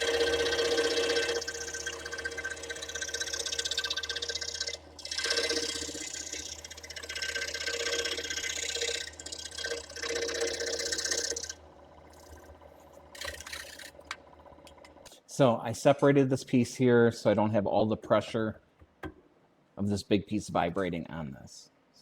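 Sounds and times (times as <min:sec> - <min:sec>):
scroll saw cutting wood: 0:00.0 - 0:15.0.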